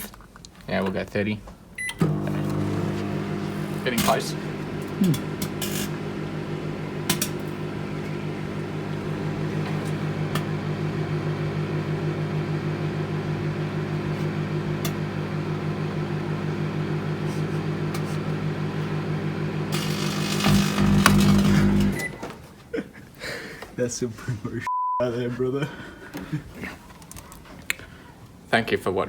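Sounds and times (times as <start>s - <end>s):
microwave oven humming: 1.8s - 22.4s.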